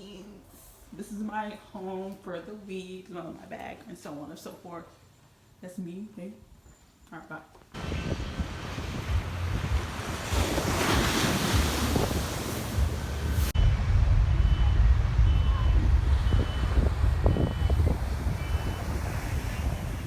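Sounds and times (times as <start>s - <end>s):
sea surf: 7.8s - 20.0s
wind buffeting microphone: 7.8s - 20.0s.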